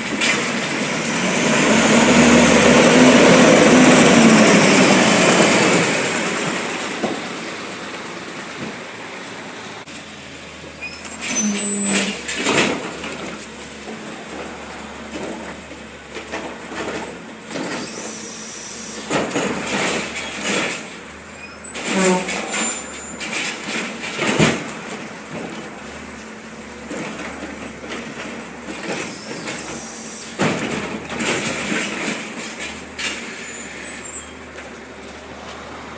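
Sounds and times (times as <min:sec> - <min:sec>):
garbage truck engine running: 0:00.0 - 0:35.9
brake squeal: 0:10.7 - 0:15.0, 0:17.5 - 0:24.1, 0:28.0 - 0:30.4, 0:31.8 - 0:35.9
air brake hiss: 0:17.7 - 0:19.1, 0:29.0 - 0:30.4.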